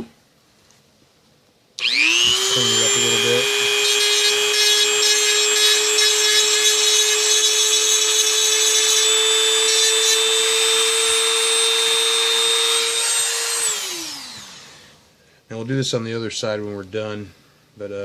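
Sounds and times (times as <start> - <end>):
rotary tool grinding: 1.8 - 14.9.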